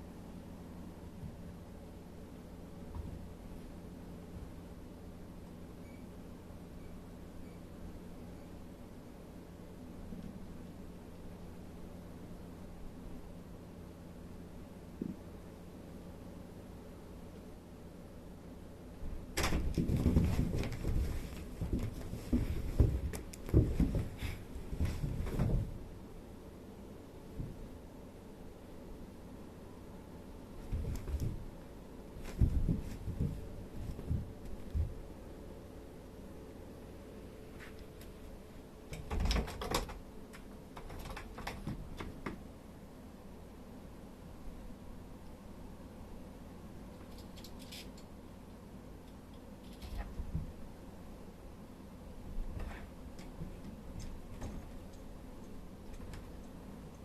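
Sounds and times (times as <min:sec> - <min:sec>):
irregular knocks and thumps: 0:19.4 - 0:25.8, 0:32.2 - 0:35.0.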